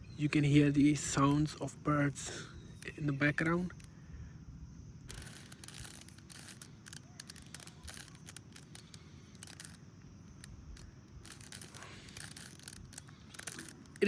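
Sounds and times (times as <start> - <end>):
puzzle cube clicking as twisted: 5.1 - 14.0.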